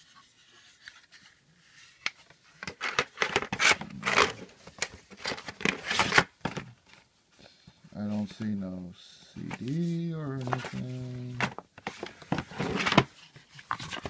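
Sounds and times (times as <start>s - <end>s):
packaging rustling and crinkling: 2.6s - 7.0s, 9.5s - 14.0s.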